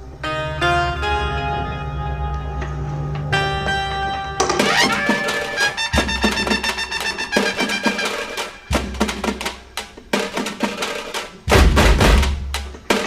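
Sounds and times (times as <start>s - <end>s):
quick struck notes: 3.7s - 13.0s.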